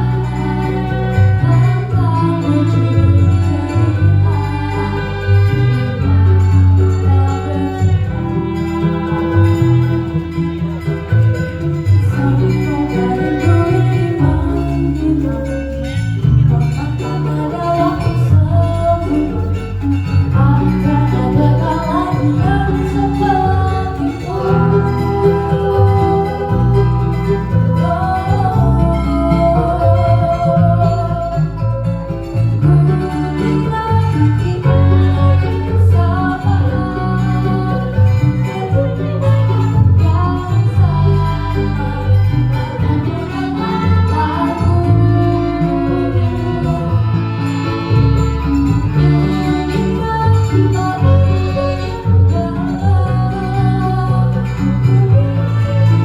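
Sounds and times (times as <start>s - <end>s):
acoustic guitar music: 0.0s - 56.0s
person singing: 0.0s - 56.0s
strong bass line: 0.0s - 56.0s.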